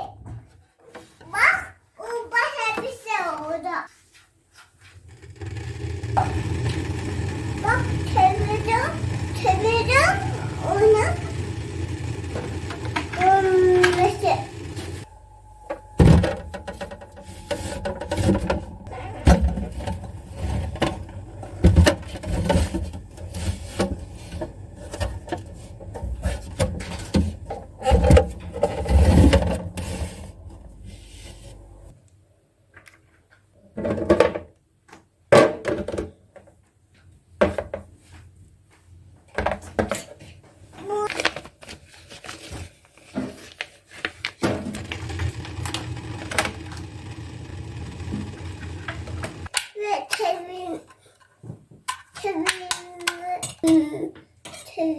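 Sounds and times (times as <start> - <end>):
low hum: 5.1 - 31.9.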